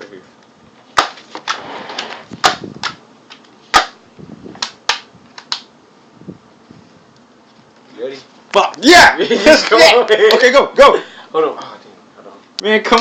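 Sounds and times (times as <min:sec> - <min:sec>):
short rush of air: 0:01.5 - 0:02.3.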